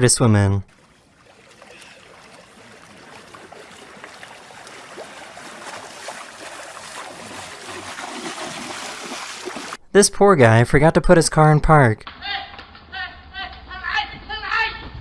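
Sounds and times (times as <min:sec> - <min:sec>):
water lapping from swimming dog: 0:00.7 - 0:09.8.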